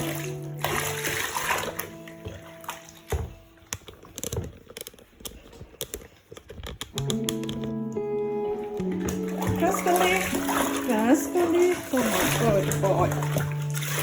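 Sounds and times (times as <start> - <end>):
plucked-string background music: 0.0 - 4.4, 6.9 - 14.0
bathwater splashing and dripping: 0.0 - 14.0.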